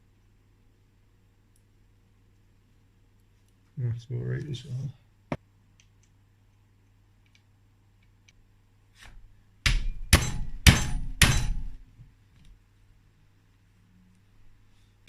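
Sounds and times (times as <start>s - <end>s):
click: 7.2s - 8.4s.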